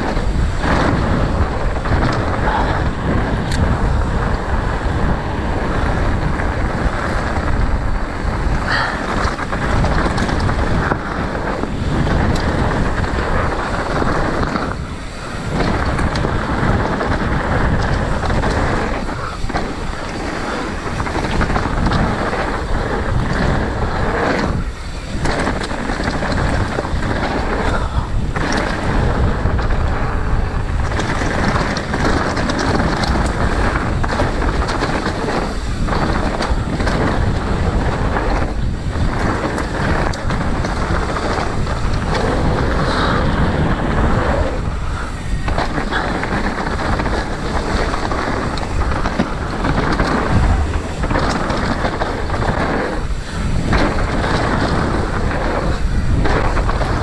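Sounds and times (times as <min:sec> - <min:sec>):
strong wind buffeting microphone: 0:00.0 - 0:57.0.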